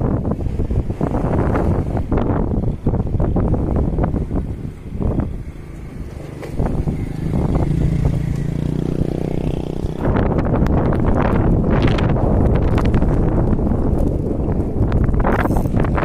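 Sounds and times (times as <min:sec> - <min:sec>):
wind buffeting microphone: 0:00.0 - 0:16.0
small engine humming: 0:04.7 - 0:10.9.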